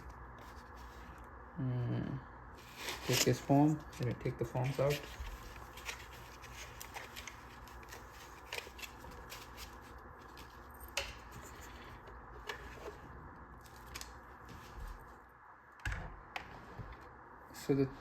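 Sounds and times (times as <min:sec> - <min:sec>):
packing foam rustling: 0:02.6 - 0:04.0, 0:04.6 - 0:13.0.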